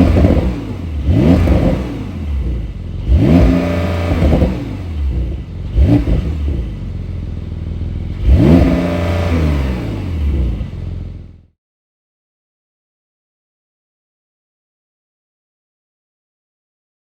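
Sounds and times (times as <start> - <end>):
car engine revving: 0.0 - 11.5.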